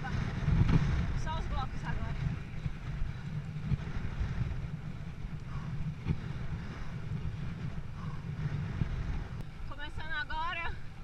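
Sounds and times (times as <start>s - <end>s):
wind blowing across microphone: 0.0s - 11.0s.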